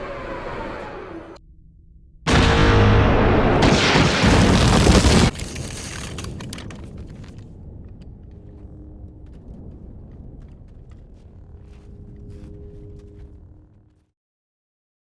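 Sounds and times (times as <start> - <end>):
heavy explosion blast: 2.3 - 11.6
low rumble with crackles: 3.6 - 14.1.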